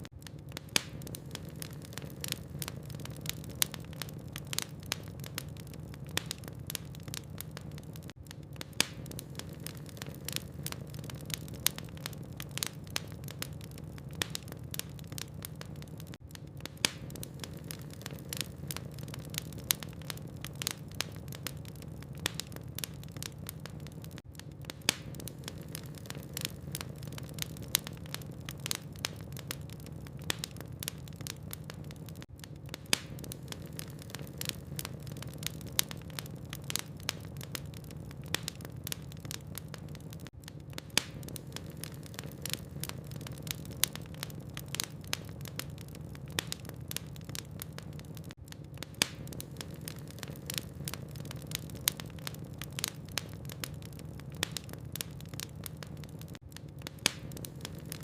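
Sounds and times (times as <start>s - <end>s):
fire crackling and popping: 0.0s - 58.0s.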